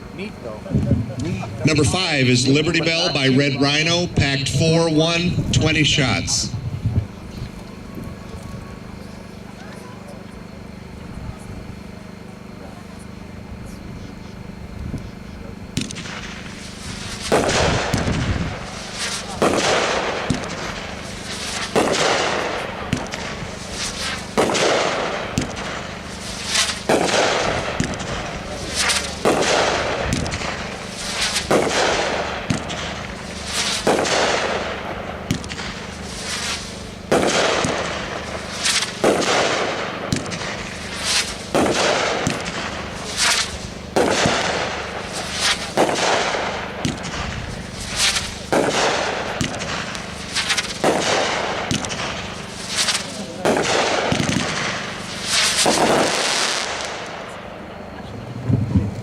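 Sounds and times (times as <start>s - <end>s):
firework bangs: 15.1s - 59.0s.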